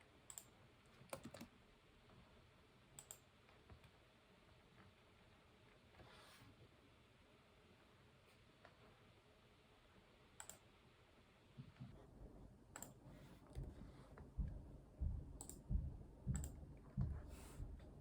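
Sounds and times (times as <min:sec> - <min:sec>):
computer mouse and keyboard clicks: 0:00.3 - 0:01.5, 0:03.0 - 0:04.0, 0:10.4 - 0:10.7, 0:12.8 - 0:14.3, 0:15.4 - 0:15.7, 0:16.3 - 0:16.6
soft thuds of keystrokes: 0:12.8 - 0:18.0.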